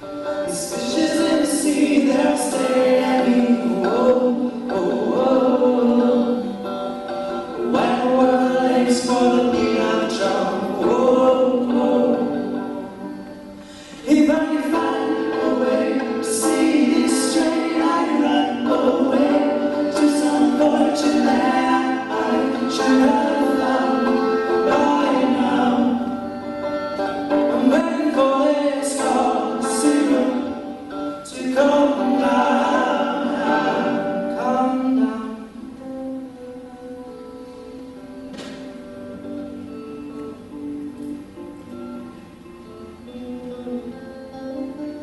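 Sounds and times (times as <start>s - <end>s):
choir singing a pop song: 0.4s - 6.7s, 14.0s - 26.3s, 27.4s - 35.2s.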